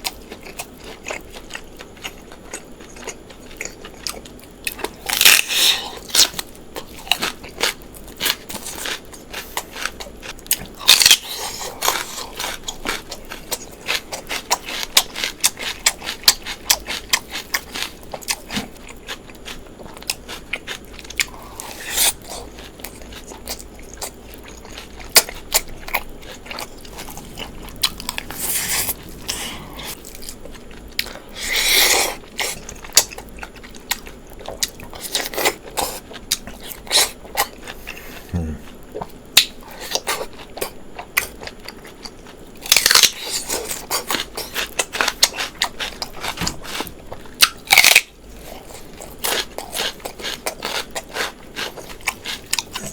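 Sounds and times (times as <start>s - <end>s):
crunchy bites: 3.0s - 9.0s, 42.6s - 52.9s.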